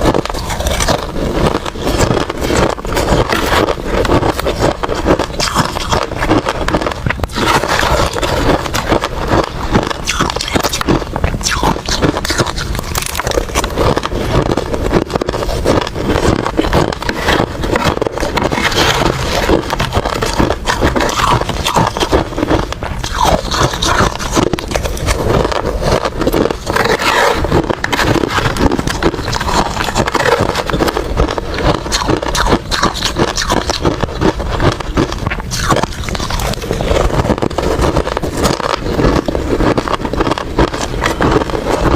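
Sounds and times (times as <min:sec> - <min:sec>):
person chewing ice: 0:00.0 - 0:41.9.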